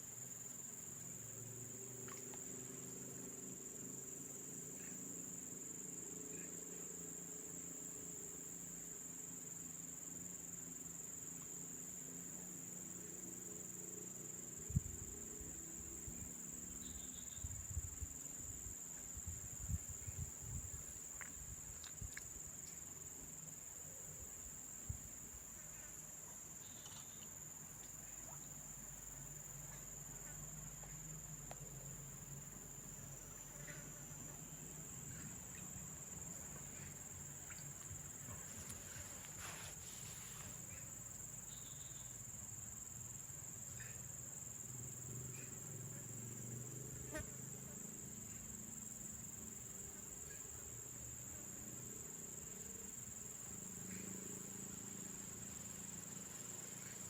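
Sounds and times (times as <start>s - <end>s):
insects buzzing: 0.0s - 57.0s.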